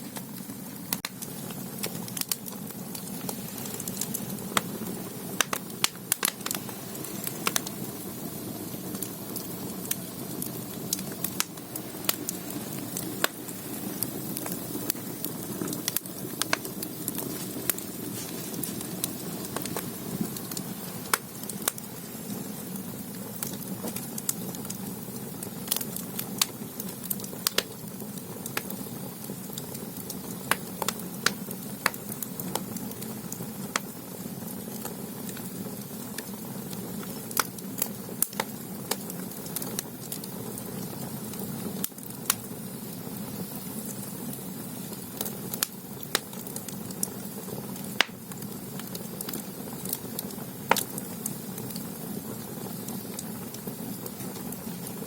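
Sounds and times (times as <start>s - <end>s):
fire rumbling: 0.0s - 55.0s
firewood crackling and popping: 0.0s - 55.0s.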